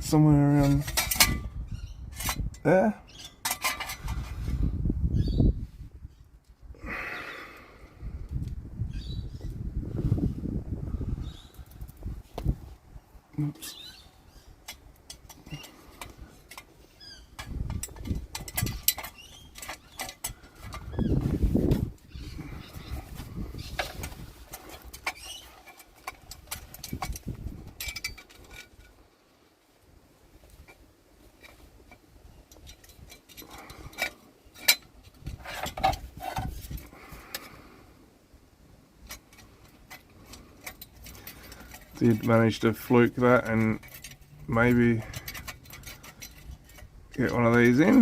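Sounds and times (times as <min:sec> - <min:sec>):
metal clicks and clinks: 0:00.6 - 0:01.5, 0:02.1 - 0:04.2, 0:14.6 - 0:16.7, 0:17.4 - 0:20.9, 0:23.8 - 0:29.0, 0:31.4 - 0:37.5, 0:39.0 - 0:48.0
low rumbling handling noise: 0:08.1 - 0:29.2.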